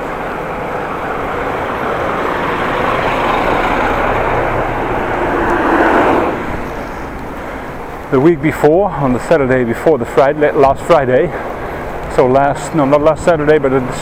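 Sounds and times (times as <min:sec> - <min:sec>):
vehicle passing: 0:00.0 - 0:08.1.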